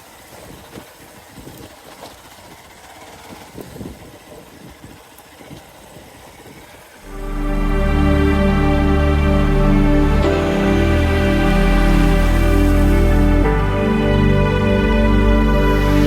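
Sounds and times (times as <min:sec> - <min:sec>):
loud music: 0:07.1 - 0:16.0.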